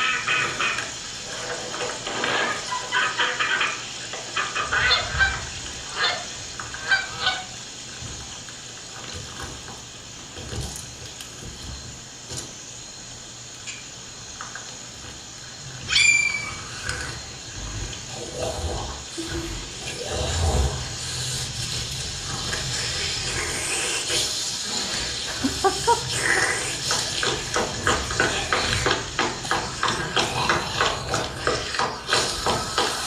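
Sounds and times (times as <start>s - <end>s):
ducks calling: 0.0s - 8.1s, 15.1s - 33.0s
steady background hiss: 0.0s - 33.0s.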